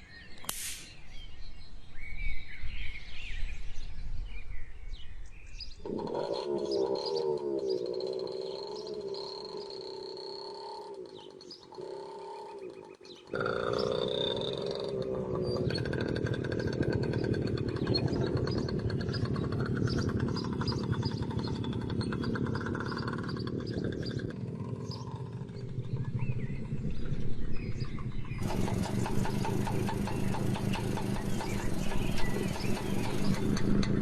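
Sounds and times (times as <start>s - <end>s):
motorcycle engine running: 15.7s - 34.0s.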